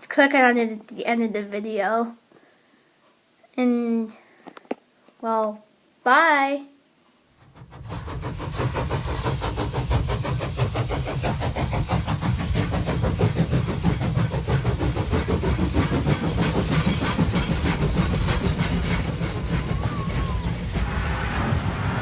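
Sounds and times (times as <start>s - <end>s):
engine clattering: 7.4s - 22.0s.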